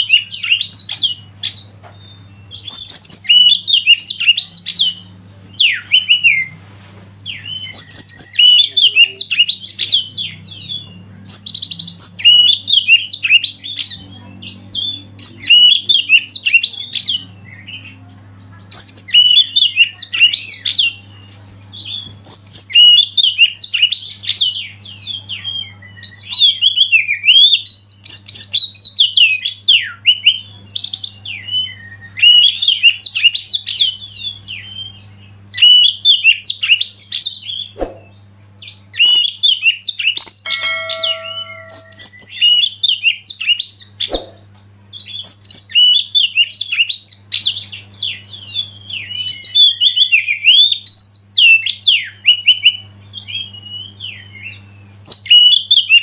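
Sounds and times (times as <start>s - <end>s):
low steady hum: 40.2s - 45.8s
bird singing whistled phrases: 45.0s - 56.0s.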